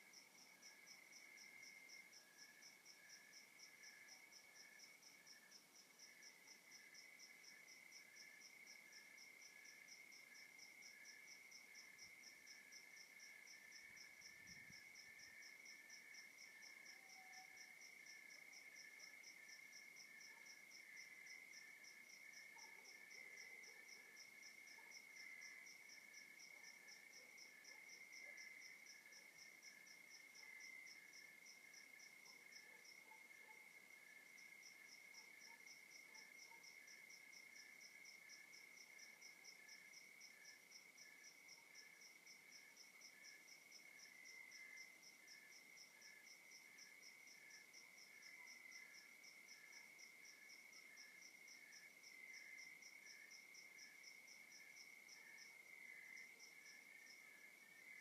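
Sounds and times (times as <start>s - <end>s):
cricket chirping: 0.0s - 58.0s.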